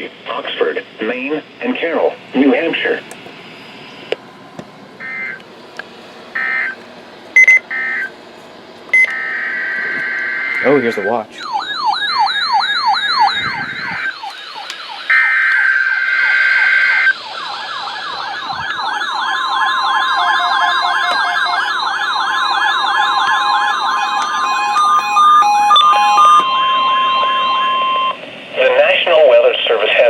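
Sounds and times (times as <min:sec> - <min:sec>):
fast warbling siren alarm: 0:05.0 - 0:05.4, 0:06.3 - 0:06.8, 0:07.4 - 0:08.1, 0:08.9 - 0:28.2
long steady alert tone: 0:05.0 - 0:05.4, 0:06.3 - 0:06.8, 0:07.4 - 0:08.2, 0:08.9 - 0:29.1
short beeps: 0:07.4 - 0:08.1, 0:08.9 - 0:09.2.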